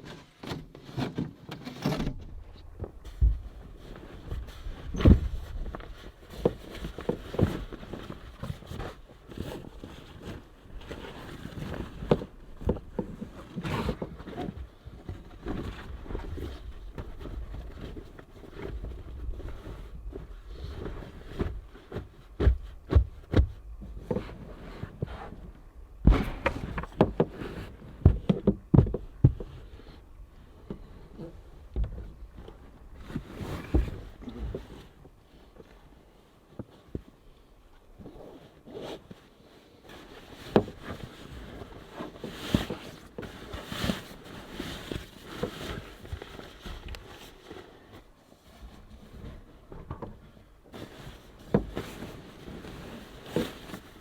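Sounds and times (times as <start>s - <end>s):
objects knocking and thumping: 26.0s - 29.6s.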